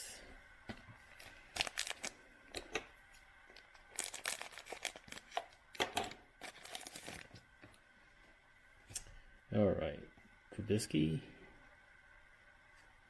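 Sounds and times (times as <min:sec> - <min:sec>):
card pack wrapper crinkling: 0:01.1 - 0:02.2, 0:03.6 - 0:05.6, 0:06.4 - 0:07.4.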